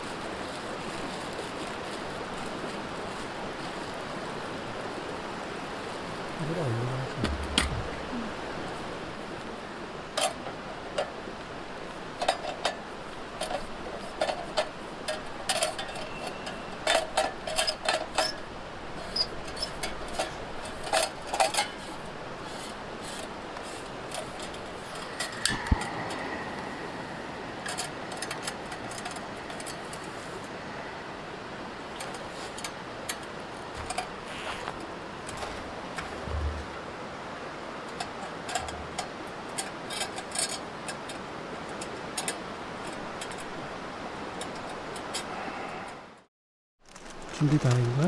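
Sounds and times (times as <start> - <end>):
steady hiss: 0.0 - 46.3, 46.9 - 48.0
camping cookware clinking: 9.9 - 26.4, 31.8 - 43.6.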